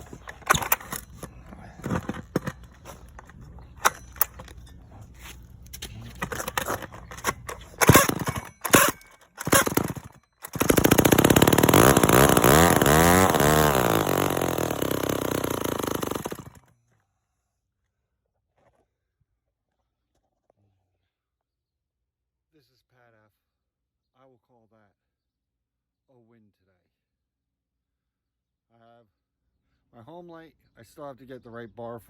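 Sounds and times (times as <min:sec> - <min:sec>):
chainsaw engine revving: 0:00.0 - 0:04.5, 0:06.1 - 0:16.6
chainsaw being pull-started: 0:00.0 - 0:16.7.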